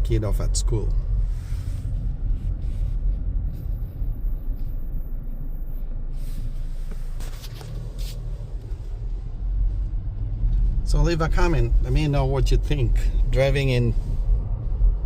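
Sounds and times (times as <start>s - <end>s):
car engine and tyres rumbling: 0.0s - 15.0s.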